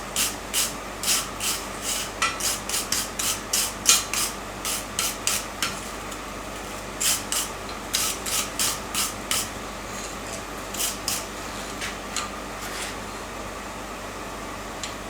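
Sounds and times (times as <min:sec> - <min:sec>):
file rasping on steel: 0:00.6 - 0:09.5, 0:10.6 - 0:13.0.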